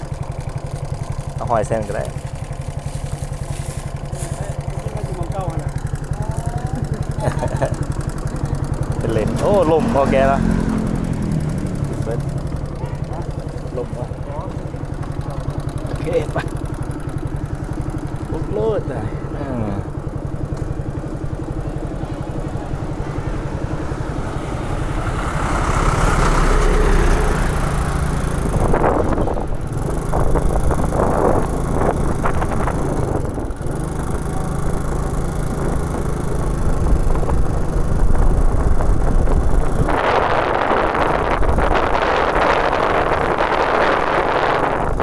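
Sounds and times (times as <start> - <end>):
motorcycle engine running: 0.0 - 45.0
wind rushing over microphone: 20.7 - 45.0.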